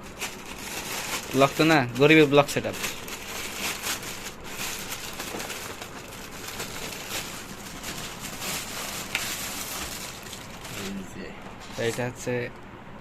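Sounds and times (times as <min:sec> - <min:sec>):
packaging crinkling and rustling: 0:00.0 - 0:12.4.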